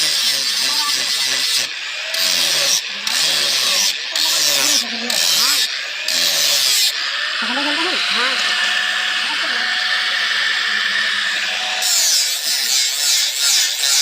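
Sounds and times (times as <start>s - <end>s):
hand tool rasping on steel blade: 0.0s - 9.9s, 10.6s - 14.0s.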